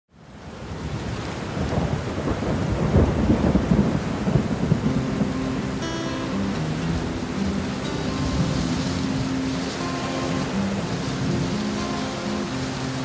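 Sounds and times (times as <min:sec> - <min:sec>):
steady rain: 0:00.1 - 0:13.0
thunder rumbling: 0:01.5 - 0:13.0
held low musical notes: 0:04.6 - 0:13.0.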